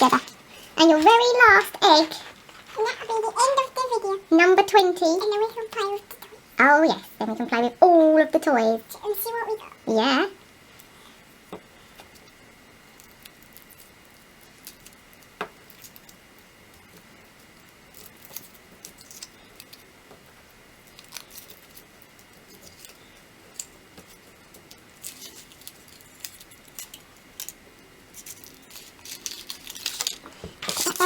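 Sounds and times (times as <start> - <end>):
foil wrapper crinkling: 0.0 - 6.1, 24.3 - 31.0.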